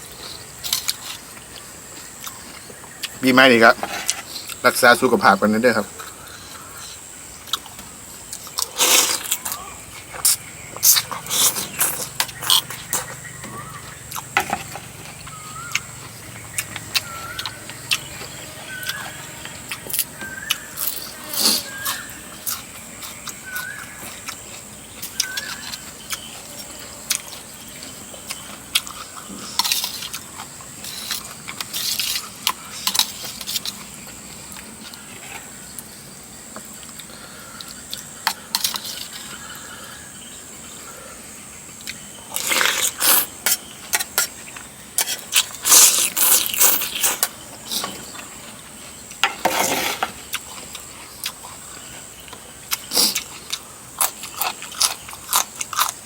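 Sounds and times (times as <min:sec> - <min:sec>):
chewing clicks: 0:50.3 - 0:56.0.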